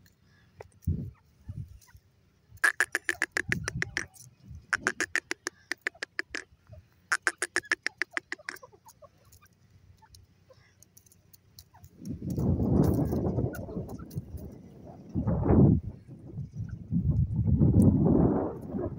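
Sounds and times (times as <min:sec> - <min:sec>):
parakeet harsh repeated calls: 0:02.6 - 0:06.5, 0:07.1 - 0:09.1.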